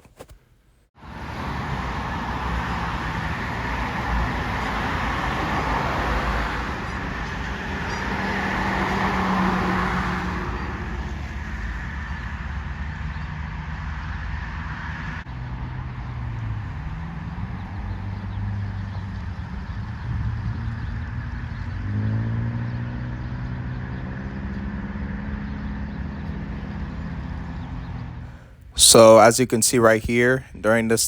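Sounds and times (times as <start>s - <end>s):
vehicles passing: 1.0s - 31.0s
engine revving: 1.1s - 13.0s, 16.2s - 27.8s.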